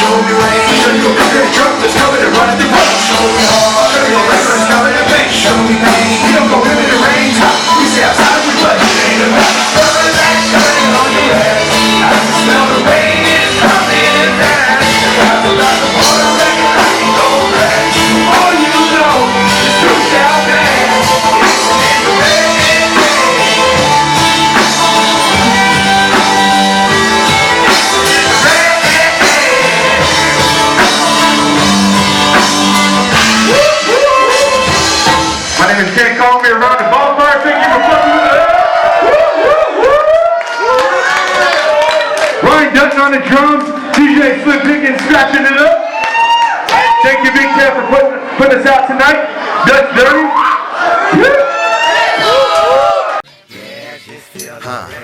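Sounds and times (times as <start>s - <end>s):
live band music with vocals: 0.0s - 36.1s
drums: 0.0s - 36.2s.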